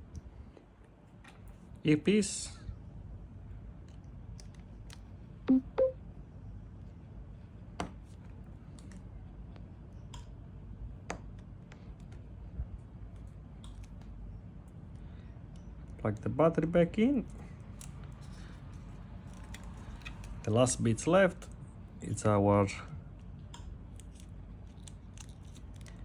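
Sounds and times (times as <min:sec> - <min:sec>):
small clicks and taps: 0:13.1 - 0:14.2.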